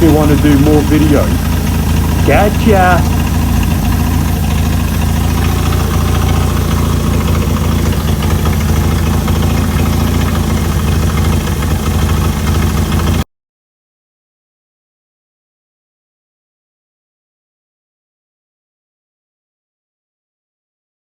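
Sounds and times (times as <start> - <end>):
engine idling: 0.0 - 13.2.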